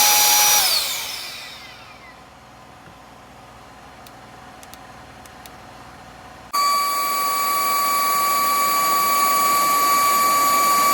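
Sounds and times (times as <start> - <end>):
handheld vacuum motor whining: 0.0 - 2.2, 6.6 - 10.9.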